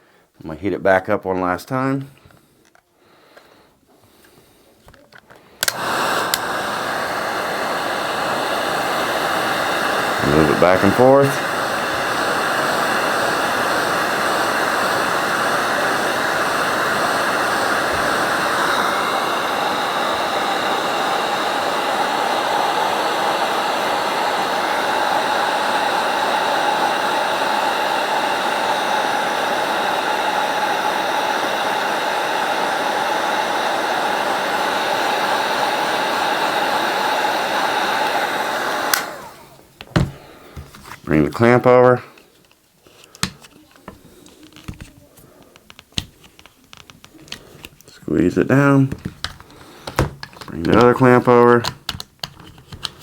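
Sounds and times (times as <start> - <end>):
heat gun blowing air: 2.2 - 46.4, 47.0 - 53.0.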